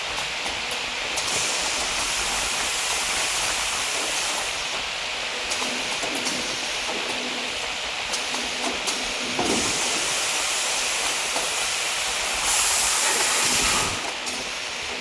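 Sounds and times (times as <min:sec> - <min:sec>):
band saw machine hissing: 0:12.2 - 0:14.2.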